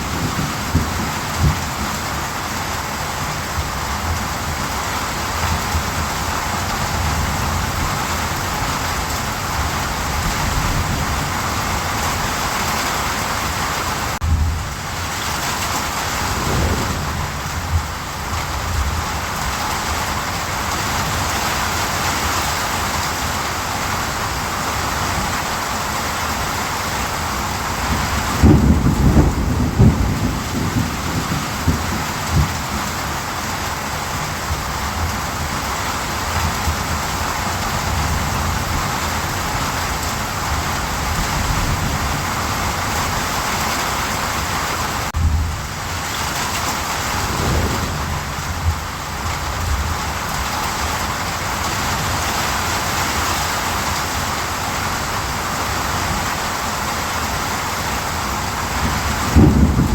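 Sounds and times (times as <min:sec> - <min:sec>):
low rumble of thunder: 0:00.0 - 0:12.6, 0:14.2 - 0:21.7, 0:27.2 - 0:33.4, 0:45.1 - 0:51.4, 0:58.4 - 0:59.9
heavy rain hiss: 0:00.0 - 0:59.9.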